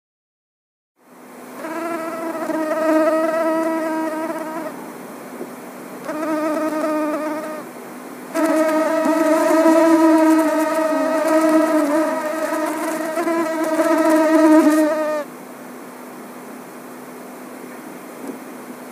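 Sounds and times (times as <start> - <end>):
mosquito buzzing: 1.6 - 4.8, 6.0 - 7.7, 8.3 - 15.3.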